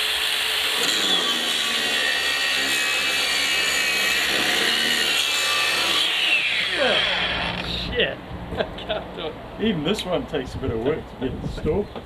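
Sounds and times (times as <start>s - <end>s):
angle grinder grinding under load: 0.0s - 7.9s.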